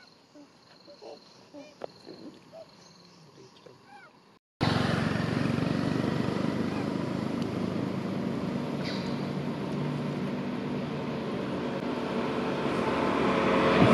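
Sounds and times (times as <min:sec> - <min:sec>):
vehicle engine and road noise: 0:00.6 - 0:13.9
monkeys squeaky calls: 0:03.8 - 0:04.2.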